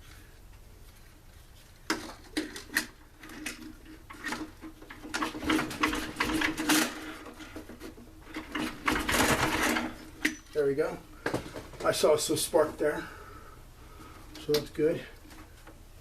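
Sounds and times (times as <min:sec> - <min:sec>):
engine turned over by hand: 0:08.3 - 0:09.9.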